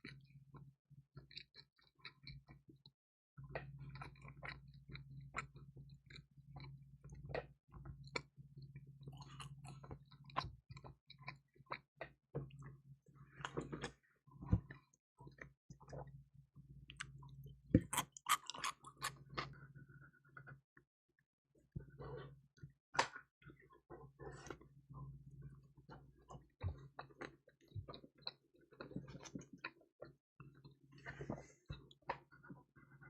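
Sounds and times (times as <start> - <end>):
crunchy chewing: 17.0 - 19.6.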